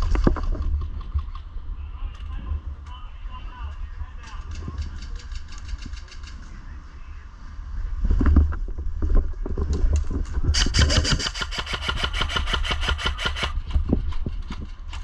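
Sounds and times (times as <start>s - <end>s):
low rumble of wind: 0.0s - 15.0s
airsoft rifle full-auto burst: 10.6s - 13.6s
scattered knocks: 10.6s - 13.6s.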